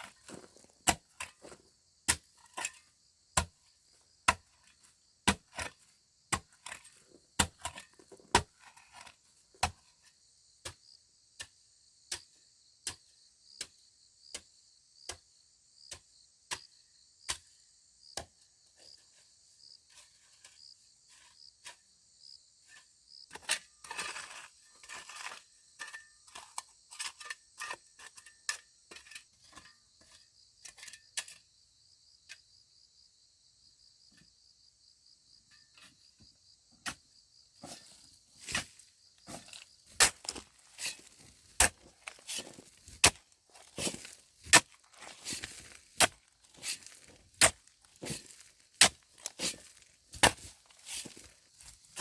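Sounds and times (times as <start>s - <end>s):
crickets chirping: 10.0s - 52.0s
scraping and rustling: 37.6s - 52.0s.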